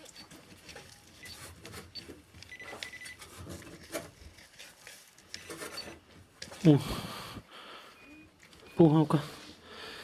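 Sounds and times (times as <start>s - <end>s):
metal detector beeping: 1.2s - 3.2s, 5.6s - 6.0s, 7.9s - 9.3s.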